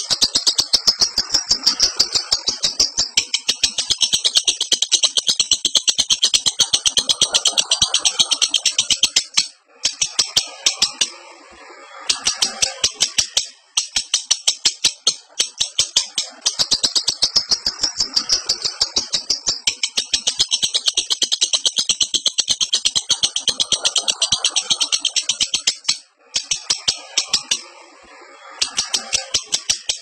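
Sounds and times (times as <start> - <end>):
bird rattling chatter: 12.1 - 27.7.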